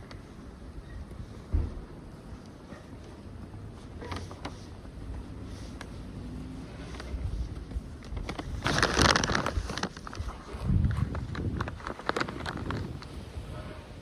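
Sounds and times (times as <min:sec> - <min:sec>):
wind buffeting microphone: 0:07.1 - 0:14.0.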